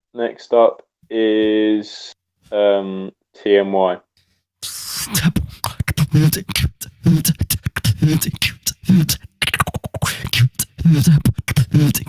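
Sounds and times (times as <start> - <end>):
man beatboxing: 4.6 - 12.0.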